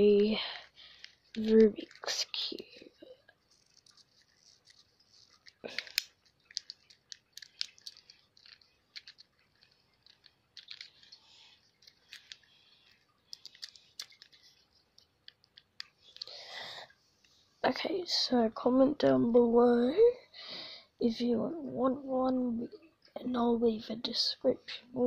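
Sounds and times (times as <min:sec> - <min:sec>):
fidget cube clicks and rubbing: 0:00.0 - 0:16.4.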